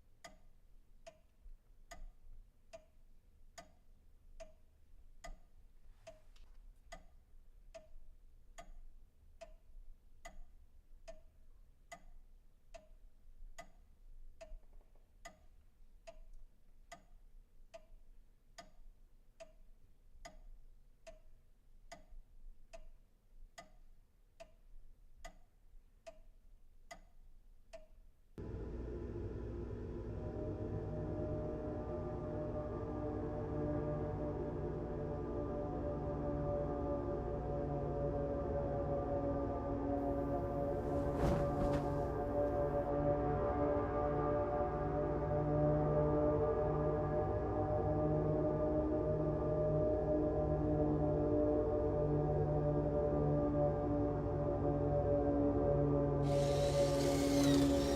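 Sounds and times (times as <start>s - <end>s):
clock ticking: 0.2s - 28.0s.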